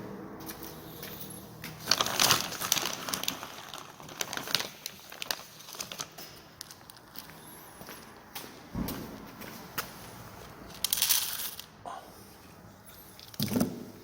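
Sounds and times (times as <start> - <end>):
crinkling and rustling: 0.4 - 11.8, 12.4 - 14.0.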